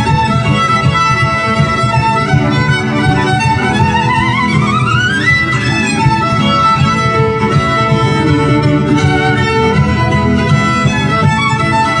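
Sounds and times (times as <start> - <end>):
fiddle: 0.0 - 12.0
folk band playing: 0.0 - 12.0.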